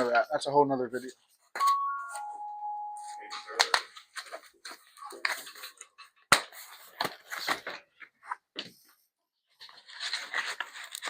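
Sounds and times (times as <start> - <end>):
packing material rustling: 9.6 - 11.0.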